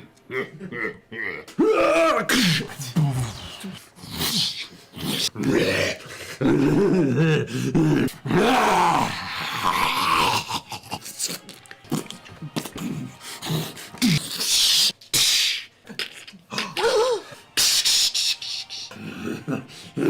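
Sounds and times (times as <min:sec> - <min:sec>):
vocal glides: 0:00.0 - 0:20.0
vocal hiss: 0:02.3 - 0:06.4, 0:08.9 - 0:20.0
mouth sound effects: 0:08.9 - 0:20.0.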